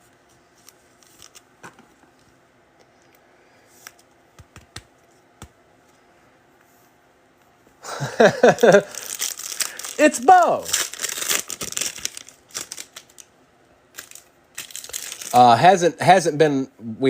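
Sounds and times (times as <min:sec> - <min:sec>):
cards clicking and tapping on table: 0:04.4 - 0:05.6.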